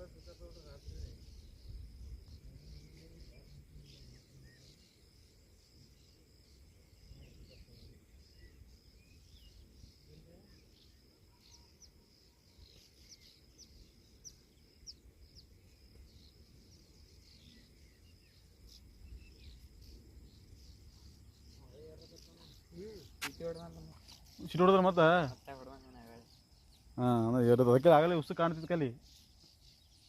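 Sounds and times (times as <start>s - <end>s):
short bird chirps: 20.6s - 24.6s.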